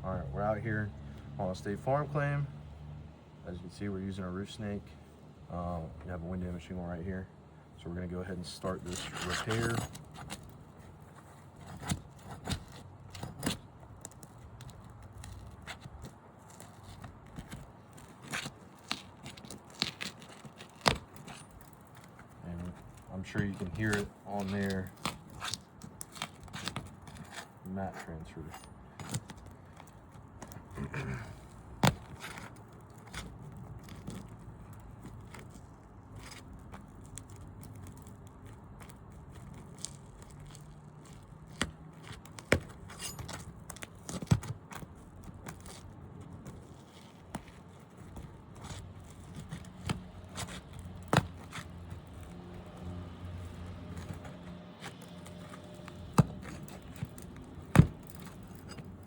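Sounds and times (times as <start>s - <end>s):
hand tools scraping shingles: 8.3s - 13.6s, 14.6s - 35.0s, 46.6s - 59.0s.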